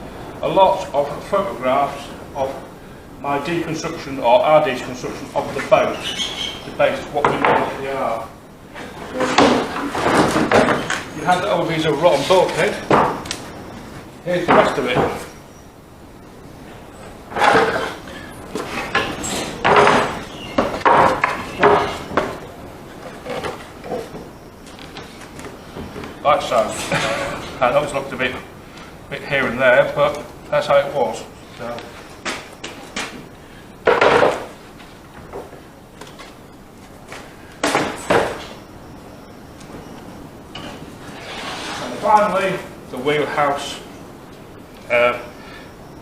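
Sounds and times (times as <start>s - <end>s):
wooden boards knocking and scraping: 7.2s - 7.8s, 8.8s - 11.4s, 12.1s - 13.5s, 14.4s - 15.3s, 17.3s - 27.4s, 31.8s - 34.6s, 37.1s - 38.6s.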